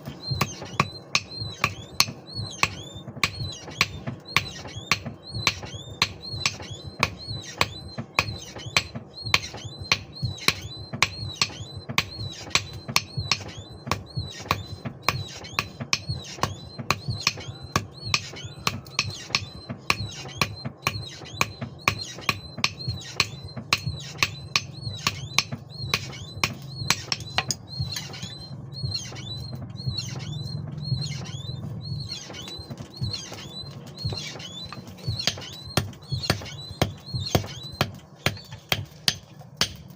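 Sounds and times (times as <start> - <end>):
low hum: 24.4 - 39.9.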